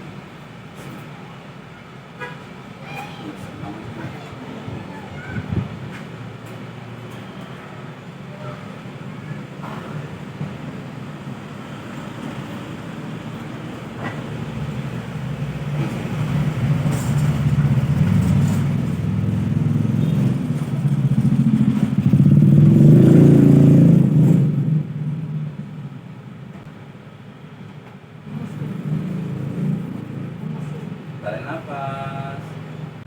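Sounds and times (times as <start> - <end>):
low engine hum: 12.9 - 27.3.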